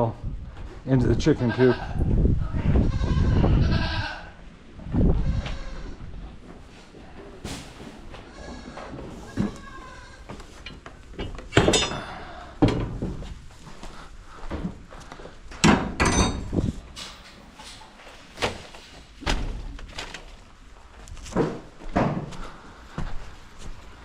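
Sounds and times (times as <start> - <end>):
sharp knocks and thuds: 12.6 - 13.4, 21.2 - 22.4.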